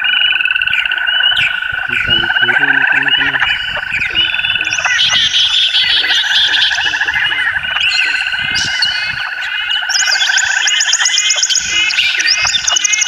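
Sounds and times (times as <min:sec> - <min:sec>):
chorus of calling animals: 0:00.0 - 0:13.0
high chirping calls: 0:00.0 - 0:13.0
short low calls: 0:01.8 - 0:08.8.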